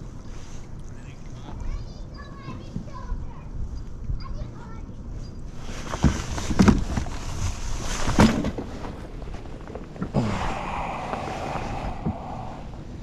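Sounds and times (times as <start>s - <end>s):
wind on microphone: 10.4s - 13.0s.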